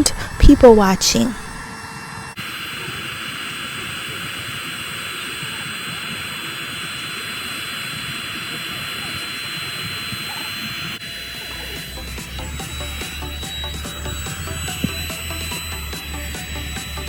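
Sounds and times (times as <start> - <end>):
low rumble: 0.0 - 2.3.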